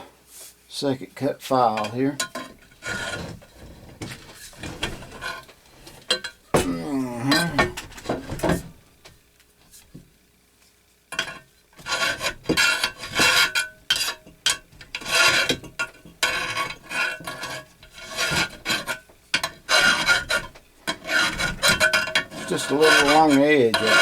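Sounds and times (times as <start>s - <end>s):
hand file rasping on metal: 2.4s - 3.4s, 11.2s - 24.0s.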